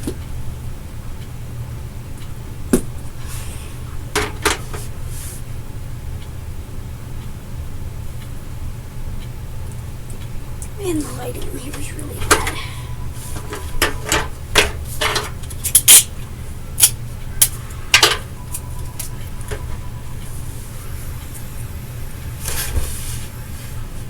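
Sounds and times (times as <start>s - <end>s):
steady low hum: 0.0s - 14.6s.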